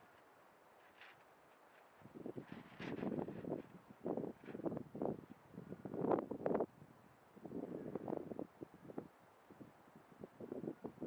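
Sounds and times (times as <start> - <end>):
wind buffeting microphone: 2.0 - 6.7.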